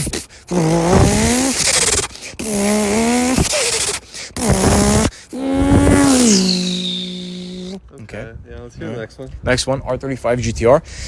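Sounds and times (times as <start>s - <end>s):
car exhaust revving blips: 0.5s - 1.8s, 2.4s - 3.8s, 4.4s - 7.8s.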